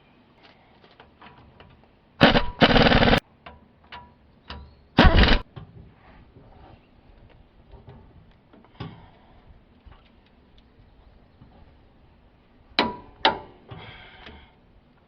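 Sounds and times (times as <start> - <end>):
impact wrench hammering: 2.2 - 3.2, 5.0 - 5.4.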